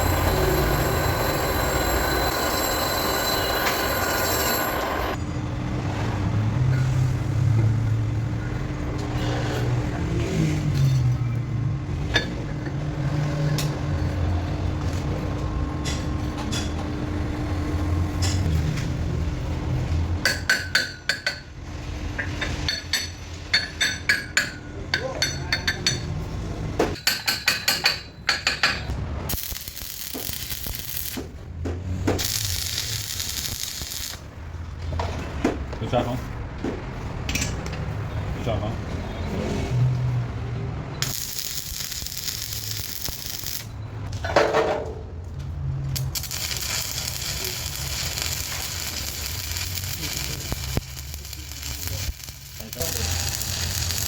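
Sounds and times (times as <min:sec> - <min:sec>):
arc welding crackling sizzle: 0:29.3 - 0:31.4, 0:32.2 - 0:34.3, 0:41.0 - 0:43.8, 0:45.9 - 0:54.0.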